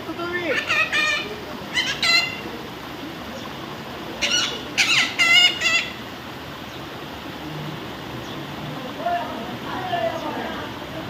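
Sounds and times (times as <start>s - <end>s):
running water: 0.0s - 11.0s
parrot squawking: 0.4s - 2.5s, 4.2s - 6.0s.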